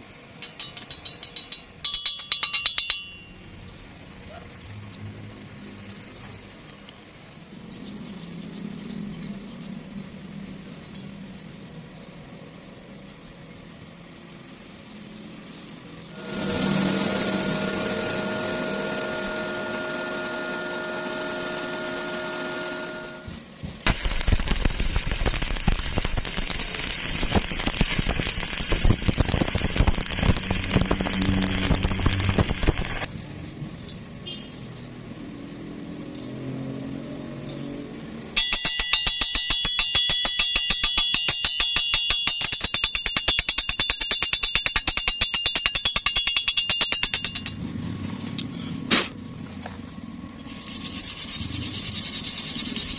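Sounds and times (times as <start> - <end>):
machine whine: 16.1 - 33.1
arc welding crackle: 23.8 - 33.1
low hum: 23.9 - 33.1.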